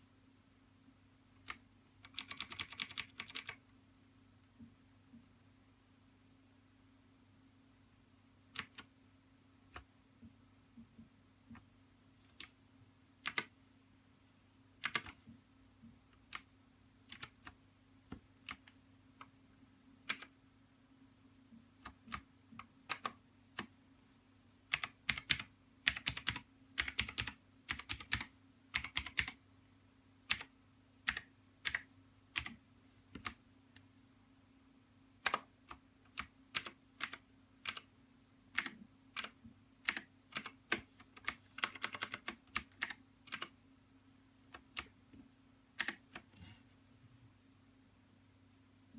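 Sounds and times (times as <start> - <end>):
mechanical keyboard keystrokes: 1.5 - 3.6, 24.7 - 29.4, 38.6 - 43.5.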